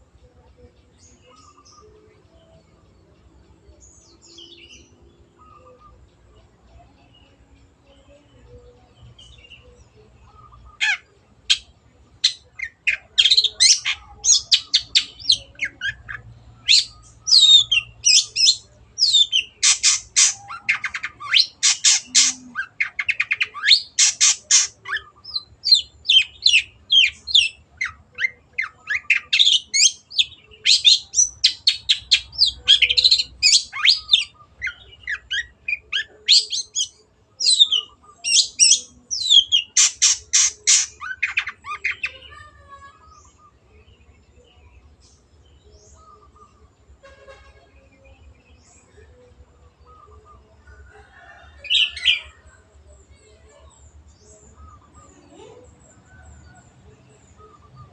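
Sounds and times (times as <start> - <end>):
bird singing harsh notes: 12.3 - 42.2.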